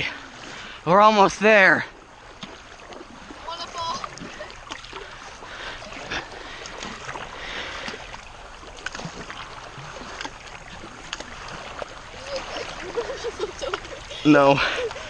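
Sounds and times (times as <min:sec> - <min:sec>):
paddles splashing in water: 0:00.0 - 0:15.0
steady watery hiss: 0:04.2 - 0:08.7, 0:09.4 - 0:15.0.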